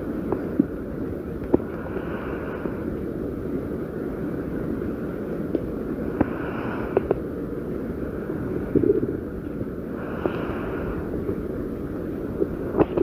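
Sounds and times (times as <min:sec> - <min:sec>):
stomach growling: 0:08.7 - 0:09.2.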